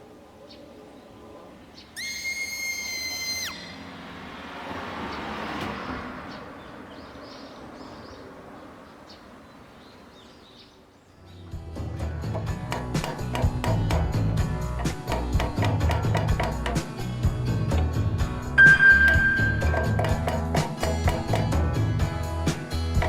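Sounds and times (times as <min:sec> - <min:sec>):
high whistle-like tone: 0:02.0 - 0:03.9, 0:18.6 - 0:19.7
vehicle passing by: 0:03.5 - 0:09.9.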